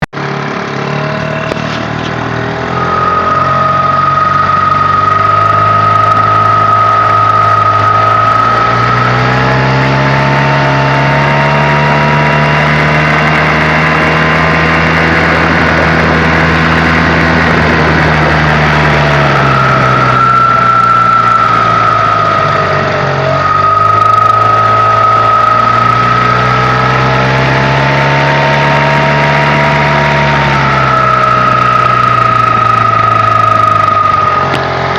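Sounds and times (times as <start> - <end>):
outboard motor running: 0.0 - 34.9
high-pitched whistle: 2.6 - 34.6.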